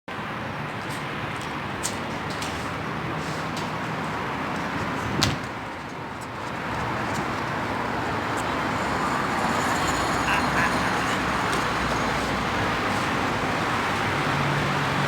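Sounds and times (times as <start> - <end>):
road traffic noise: 0.1 - 15.0.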